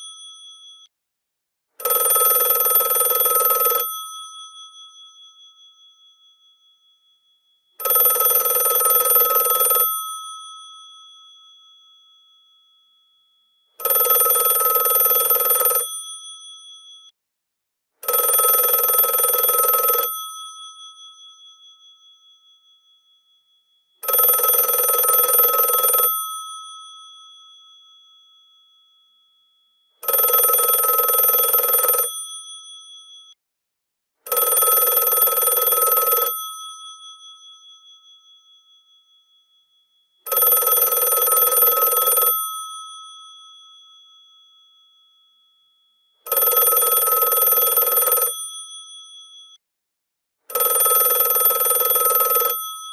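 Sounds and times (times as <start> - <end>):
telephone bells ringing: 1.8 - 4.1, 7.8 - 10.4, 13.8 - 16.0, 18.0 - 20.4, 24.0 - 26.7, 30.0 - 32.2, 34.3 - 36.5, 40.3 - 42.8, 46.3 - 48.5, 50.5 - 52.9.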